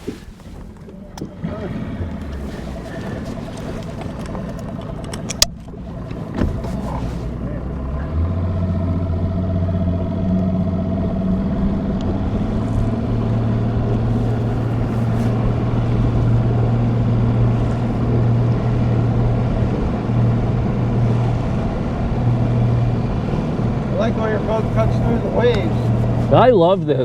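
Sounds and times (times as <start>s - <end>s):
outboard motor running: 0.0s - 27.0s.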